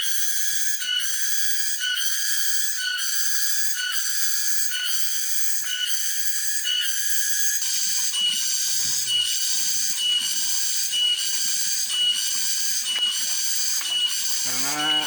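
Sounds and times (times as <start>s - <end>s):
cicadas droning: 7.6s - 15.0s.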